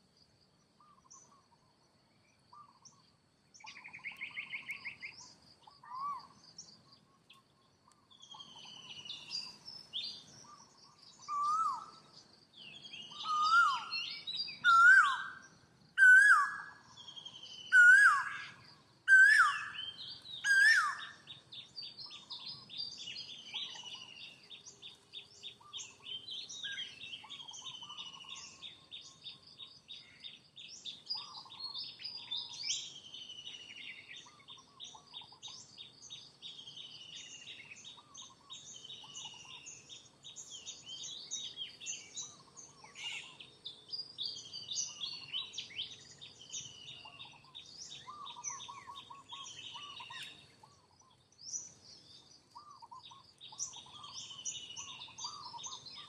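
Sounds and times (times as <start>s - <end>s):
lower short bird calls: 2.5s - 24.8s, 44.8s - 51.7s
birds chirping and whistling: 3.6s - 56.0s.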